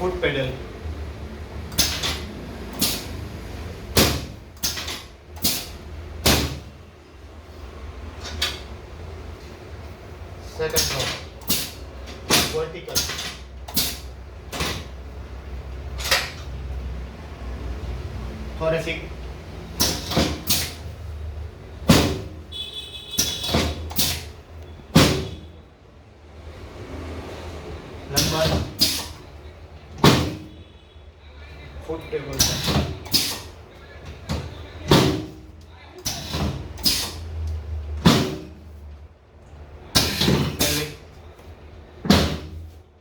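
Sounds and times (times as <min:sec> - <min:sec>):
adjusting table clunks and clacks: 0:10.7 - 0:15.0, 0:40.0 - 0:40.9.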